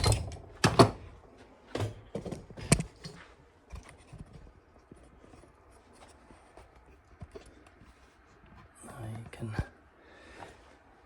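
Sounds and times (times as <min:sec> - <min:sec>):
metal parts clinking and knocking: 0:00.0 - 0:01.1.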